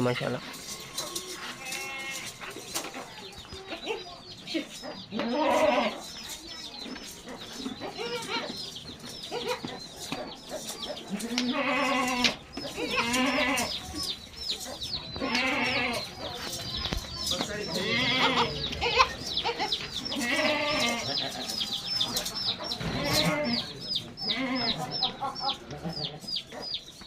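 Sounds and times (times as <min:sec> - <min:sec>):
goats bleating: 0:00.5 - 0:02.5, 0:05.1 - 0:06.1, 0:11.1 - 0:13.8, 0:15.2 - 0:16.2, 0:17.7 - 0:21.2, 0:22.8 - 0:24.8
rapid high-pitched chirping: 0:11.8 - 0:22.9.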